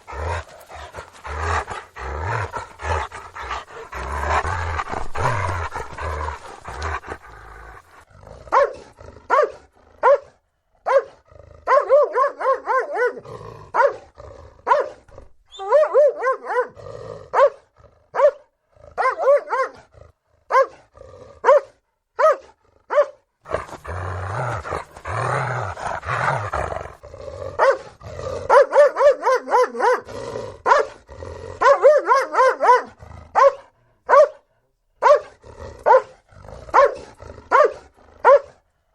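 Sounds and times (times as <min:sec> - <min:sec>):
dog growling: 0:00.0 - 0:10.0, 0:13.1 - 0:15.4, 0:23.4 - 0:31.8, 0:32.6 - 0:33.8, 0:35.3 - 0:38.4
dog barking: 0:00.0 - 0:15.0, 0:15.6 - 0:19.8, 0:20.5 - 0:27.0, 0:27.6 - 0:31.0, 0:31.6 - 0:38.6.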